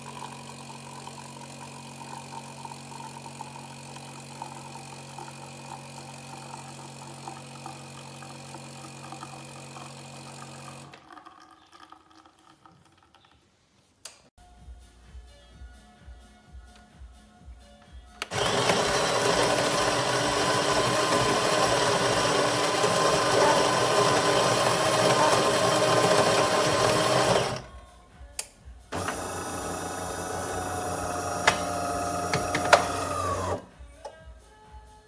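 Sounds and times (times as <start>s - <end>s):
espresso machine pump humming: 0.0s - 11.2s, 18.2s - 27.7s, 28.9s - 33.7s
coffee grinder grinding beans: 0.0s - 13.2s, 18.2s - 27.8s, 28.9s - 33.7s
espresso machine clicks: 31.4s - 33.0s.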